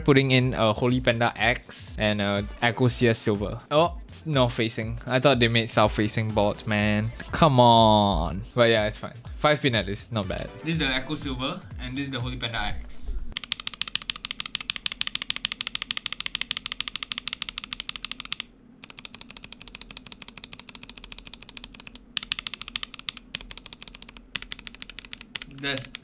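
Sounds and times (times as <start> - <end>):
mechanical keyboard keystrokes: 13.4 - 26.0.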